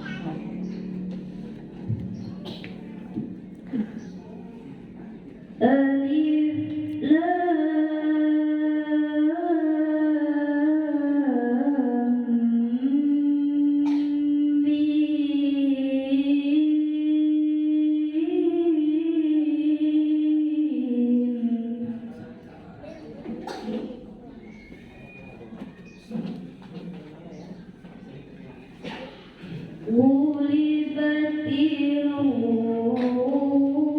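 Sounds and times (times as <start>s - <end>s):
girl reciting melodically: 5.6s - 22.3s, 29.8s - 33.9s.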